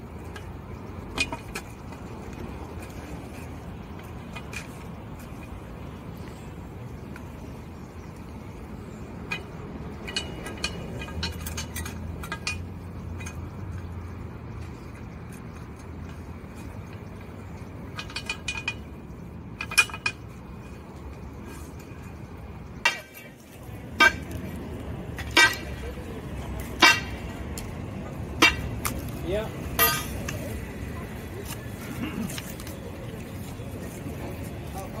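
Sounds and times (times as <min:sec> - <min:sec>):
low rumble of traffic: 0:00.0 - 0:35.0
metal clinks and clanks: 0:08.8 - 0:35.0.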